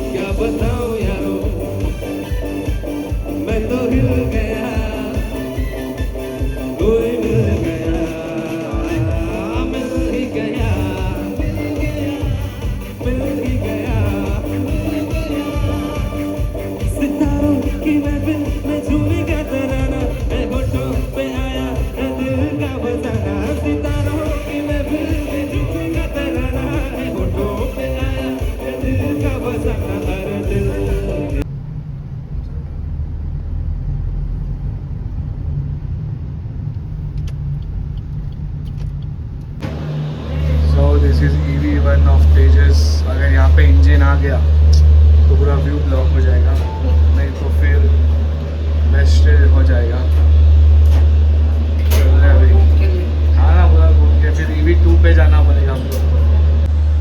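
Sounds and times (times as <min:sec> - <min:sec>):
steady drum beat: 0:00.0 - 0:31.4, 0:39.6 - 0:56.8
song with singing voice: 0:00.0 - 0:31.5
vehicle rumble and hum: 0:00.0 - 0:57.0.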